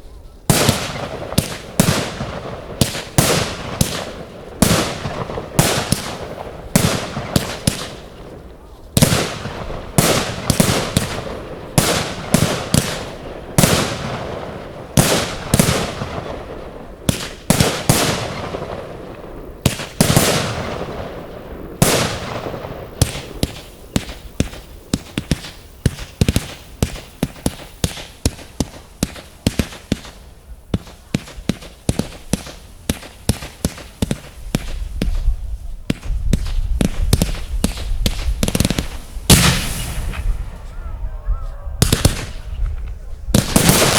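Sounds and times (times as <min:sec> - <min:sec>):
fireworks crackle: 0:00.0 - 0:40.8, 0:41.8 - 0:43.9
small firework bangs: 0:00.4 - 0:40.8, 0:41.8 - 0:43.9
firework shell bursts: 0:35.9 - 0:40.6.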